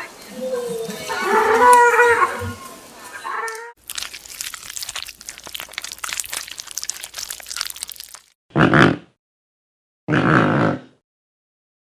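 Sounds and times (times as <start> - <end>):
animal wavering cry: 0.0 - 3.8
rapid crunching and crackling: 0.0 - 8.4.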